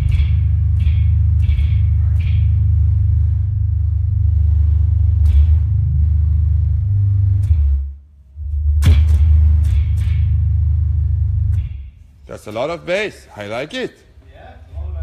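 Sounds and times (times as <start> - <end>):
electric bass guitar: 0.0 - 11.9.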